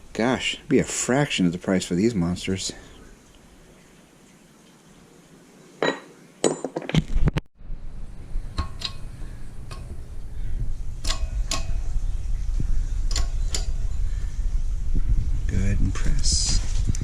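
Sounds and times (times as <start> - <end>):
steady low hum: 7.6 - 17.0.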